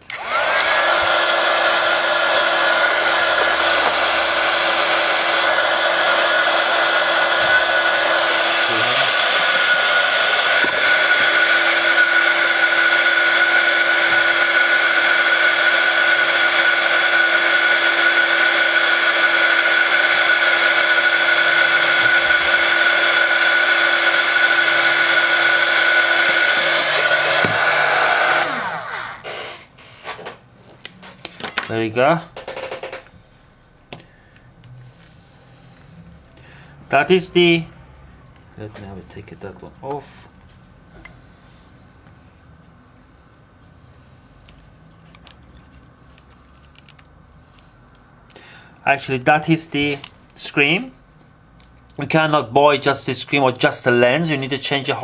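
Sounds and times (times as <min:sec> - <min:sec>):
hot air gun blowing: 0:00.0 - 0:30.3.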